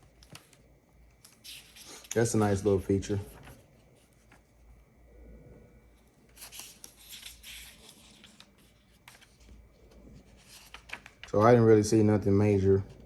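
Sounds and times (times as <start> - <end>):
paper pages rustling: 0.0 - 4.8, 6.3 - 11.5.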